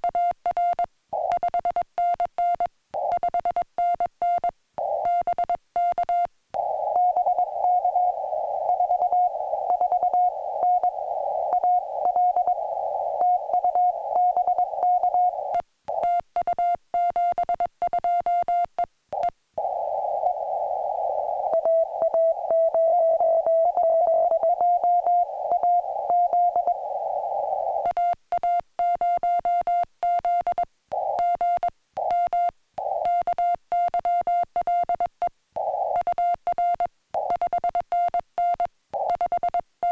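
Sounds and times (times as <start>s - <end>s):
morse code beeps: 0.0s - 19.8s, 21.5s - 26.8s, 27.7s - 39.9s
hissy receiver noise: 6.6s - 16.0s, 19.2s - 27.9s.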